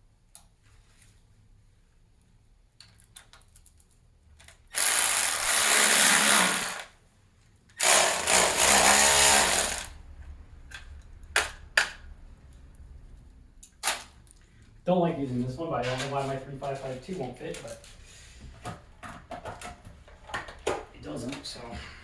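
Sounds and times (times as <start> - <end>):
whirring shop tool: 4.4 - 7.0, 7.7 - 10.0.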